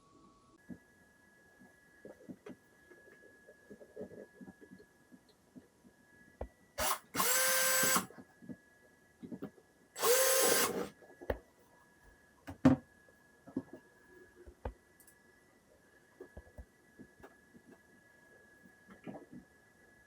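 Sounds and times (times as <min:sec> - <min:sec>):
electric drill whining: 0:06.8 - 0:08.1, 0:10.0 - 0:10.9.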